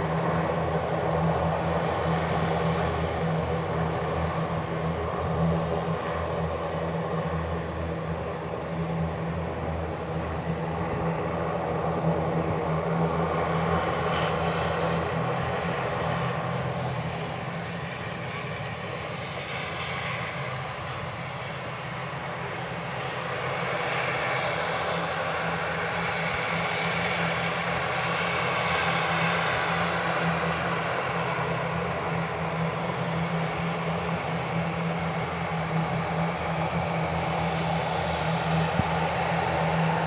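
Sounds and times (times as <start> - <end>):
turboprop engines droning: 0.0 - 40.0.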